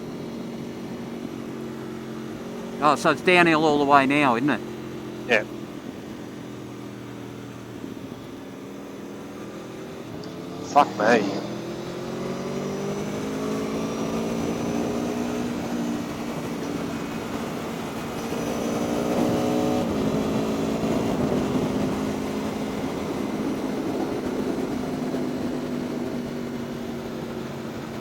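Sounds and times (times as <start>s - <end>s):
motorcycle engine under throttle: 11.5s - 28.0s.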